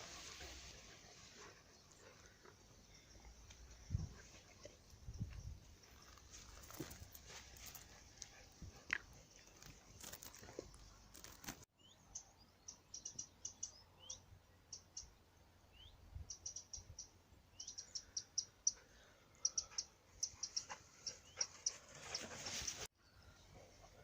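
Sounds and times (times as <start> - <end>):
songbirds chirping: 0.0 - 24.0
rustling noise: 3.9 - 8.8, 9.4 - 11.7, 21.6 - 22.9.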